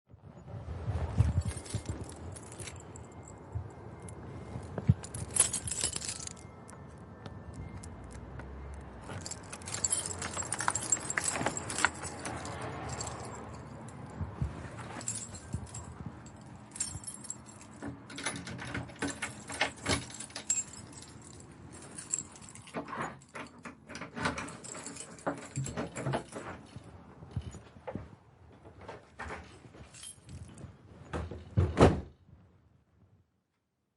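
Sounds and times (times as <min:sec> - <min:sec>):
keys jangling: 0:01.2 - 0:06.5, 0:07.7 - 0:27.8, 0:29.7 - 0:30.7
lock and handle clicking: 0:16.9 - 0:21.0.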